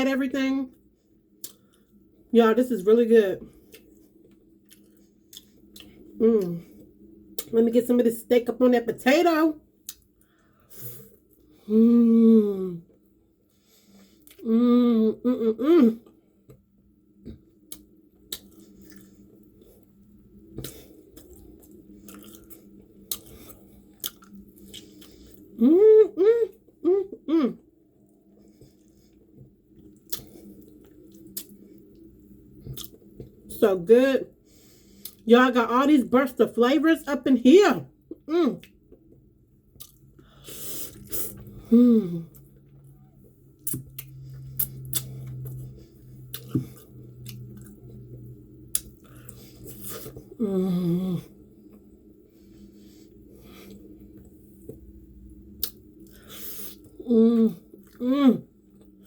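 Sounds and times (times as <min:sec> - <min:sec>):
person chewing food: 0:01.3 - 0:02.0, 0:03.5 - 0:07.5, 0:13.9 - 0:14.4, 0:17.2 - 0:25.6, 0:28.0 - 0:33.4, 0:34.9 - 0:35.2, 0:38.6 - 0:41.6, 0:42.2 - 0:50.4, 0:52.5 - 0:58.0
breath: 0:10.2 - 0:11.1, 0:34.4 - 0:35.2
man humming mm: 0:14.4 - 0:15.9
closed-mouth hums of enjoyment: 0:25.6 - 0:27.6
wet mouth clicks: 0:43.6 - 0:45.6.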